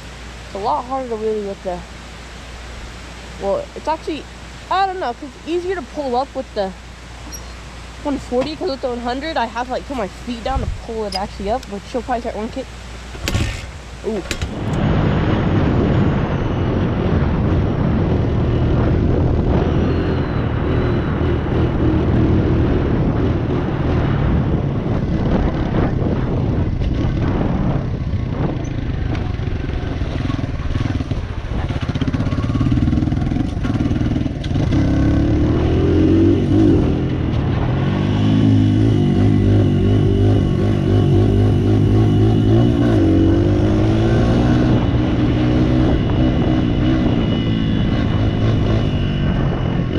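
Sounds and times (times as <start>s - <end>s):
dirt bike engine revving: 28.4s - 49.9s.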